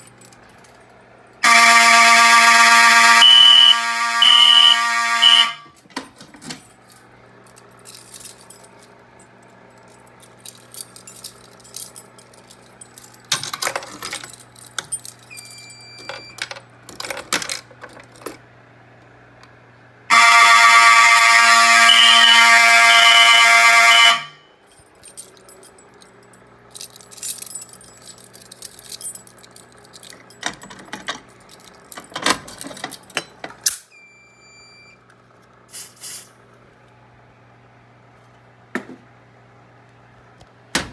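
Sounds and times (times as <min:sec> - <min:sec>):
fire alarm horn blaring: 0:01.4 - 0:05.8, 0:20.1 - 0:24.7
short beeps: 0:03.0 - 0:05.6.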